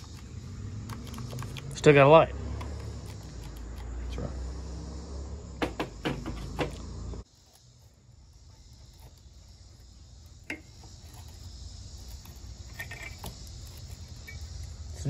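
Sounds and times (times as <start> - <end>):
crickets chirring: 0.0 - 15.0
sharp knocks and clicks: 5.6 - 7.0.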